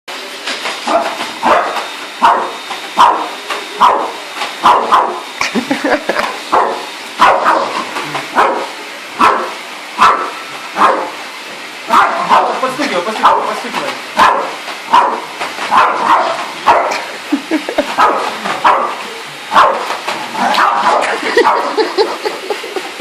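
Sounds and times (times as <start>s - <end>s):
vacuum cleaner running: 0.1s - 23.0s
dog barking: 0.9s - 5.2s, 6.5s - 11.2s, 11.9s - 13.5s, 14.2s - 17.0s, 18.0s - 21.8s.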